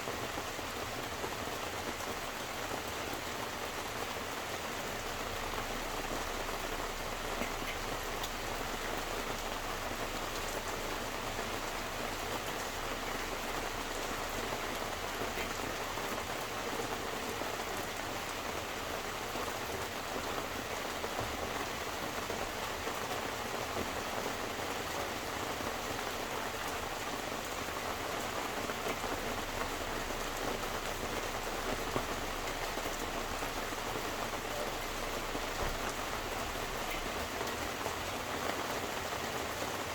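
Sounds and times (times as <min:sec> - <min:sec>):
steady rain pattering: 0:00.0 - 0:39.9.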